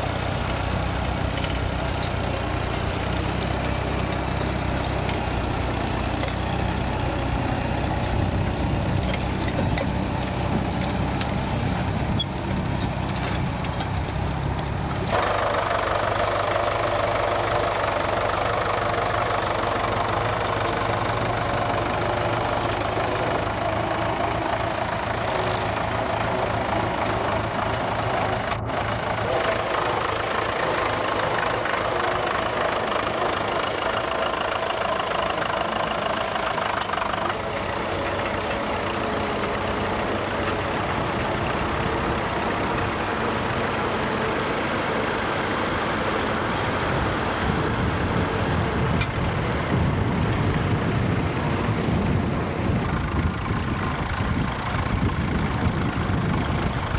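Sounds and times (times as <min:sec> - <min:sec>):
tractor engine running: 0:00.0 - 0:56.9.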